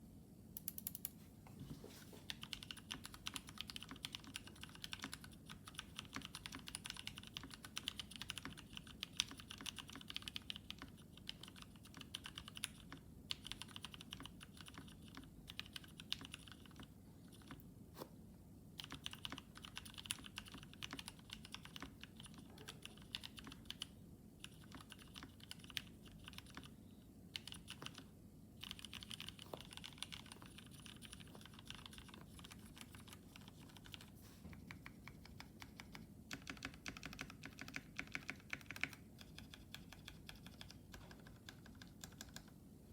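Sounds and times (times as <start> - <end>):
typing on mechanical keyboard: 0.6 - 1.1, 2.3 - 17.6, 18.8 - 42.6.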